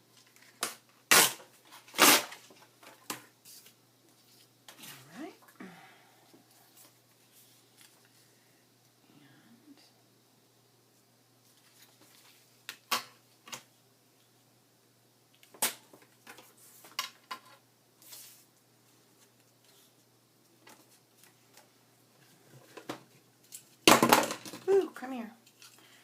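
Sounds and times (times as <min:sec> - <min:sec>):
paper rustling: 0:11.4 - 0:12.5.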